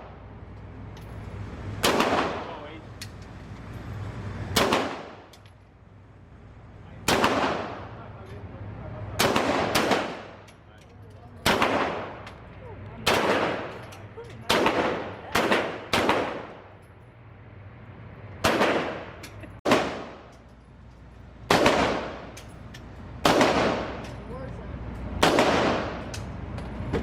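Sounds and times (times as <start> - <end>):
gunshots echoing: 1.8 - 2.6, 4.6 - 5.3, 7.0 - 7.9, 9.2 - 10.5, 11.4 - 12.2, 13.1 - 13.8, 14.4 - 16.7, 18.4 - 20.3, 21.5 - 22.4, 23.2 - 24.0, 25.2 - 26.1.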